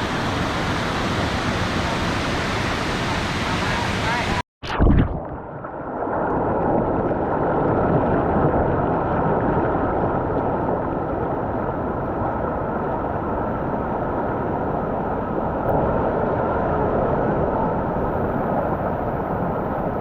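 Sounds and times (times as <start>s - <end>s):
waterfall roaring: 0.0s - 4.4s.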